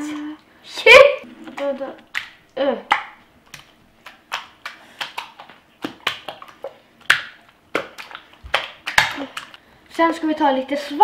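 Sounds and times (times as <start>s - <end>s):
hands slapping wet slime: 2.1s - 9.6s.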